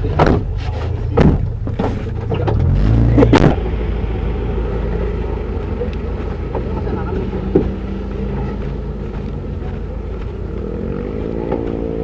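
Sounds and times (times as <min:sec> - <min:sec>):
short thuds: 0:00.0 - 0:03.6.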